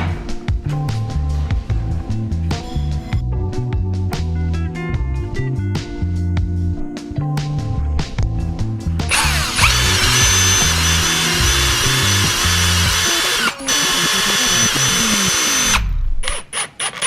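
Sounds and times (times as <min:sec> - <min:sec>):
background music: 0:00.0 - 0:16.0
power tool whining: 0:09.1 - 0:17.0.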